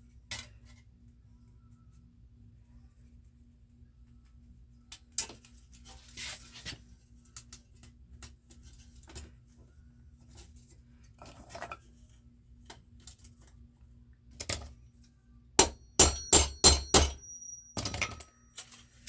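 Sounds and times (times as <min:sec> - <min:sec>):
hammer knock: 0:15.6 - 0:18.1
hammer striking metal rivets: 0:15.6 - 0:18.3.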